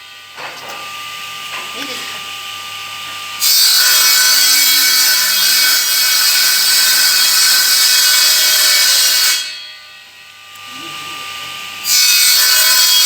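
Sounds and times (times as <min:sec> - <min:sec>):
angle grinder whining: 0:00.7 - 0:05.3.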